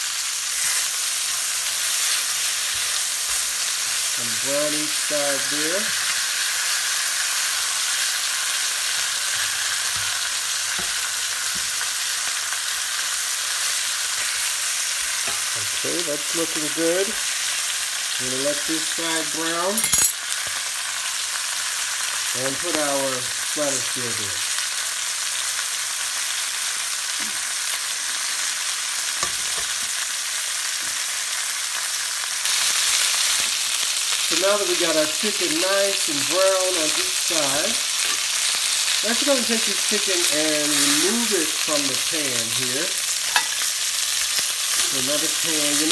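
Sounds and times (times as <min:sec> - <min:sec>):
chicken sizzling in oil: 0:00.0 - 0:45.9.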